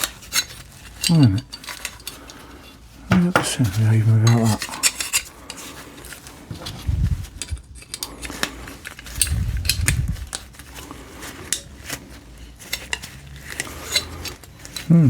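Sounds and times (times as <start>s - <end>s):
small metal clicks and scrapes: 0.0s - 3.0s, 3.6s - 14.9s
dull handling thumps: 3.1s - 3.7s.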